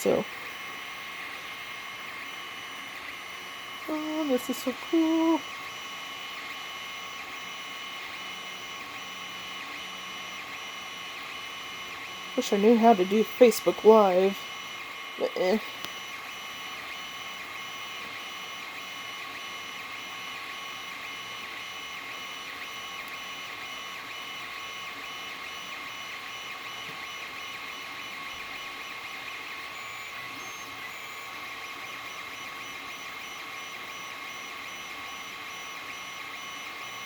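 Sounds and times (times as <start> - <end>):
printer motors and fans whining: 0.0 - 37.0.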